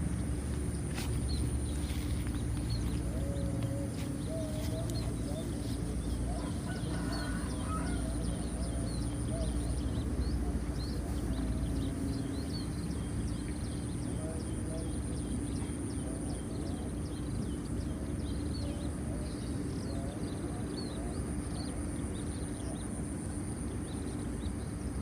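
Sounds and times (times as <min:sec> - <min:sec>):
high-pitched hum: 0:00.0 - 0:25.0
lower wavering bird call: 0:01.6 - 0:17.1.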